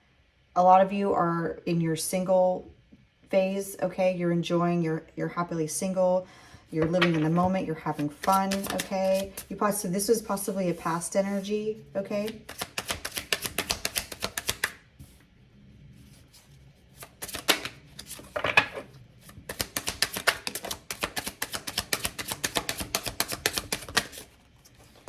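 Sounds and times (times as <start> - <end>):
cards being shuffled: 6.8 - 9.6, 12.2 - 15.2, 16.2 - 25.0.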